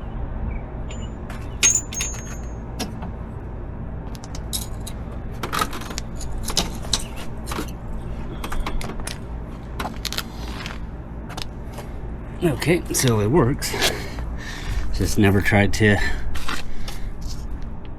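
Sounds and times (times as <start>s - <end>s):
metallic clicks and jingles: 0.9s - 2.6s.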